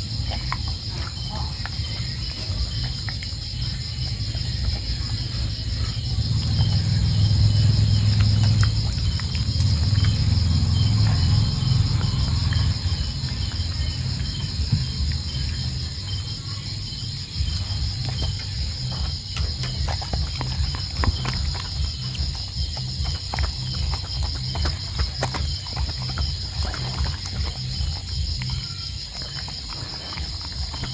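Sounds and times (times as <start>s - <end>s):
insects chirping: 0.0s - 30.9s.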